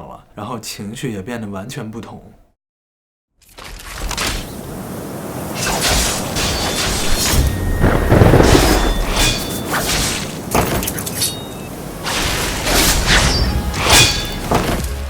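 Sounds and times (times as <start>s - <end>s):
crashes and shattering glass: 5.6s - 15.0s.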